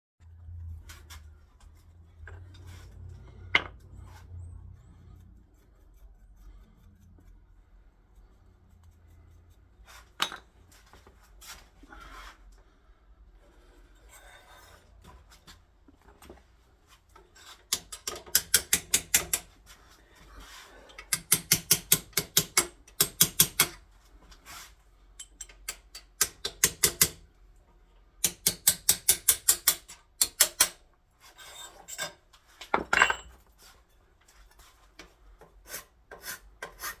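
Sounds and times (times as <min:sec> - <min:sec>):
sharp file strokes: 0:35.6 - 0:37.0.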